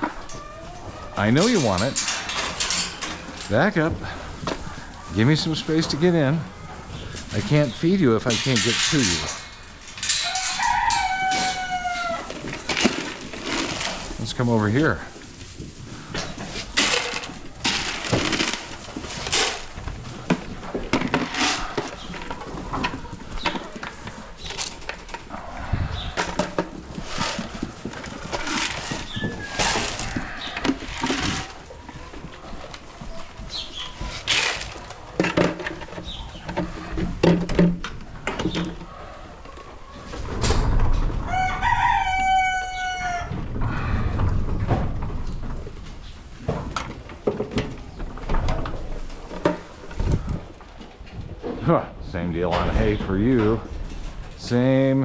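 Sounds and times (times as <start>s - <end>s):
rustling: 0.0s - 55.0s
rooster crowing: 10.2s - 12.4s, 41.2s - 43.4s.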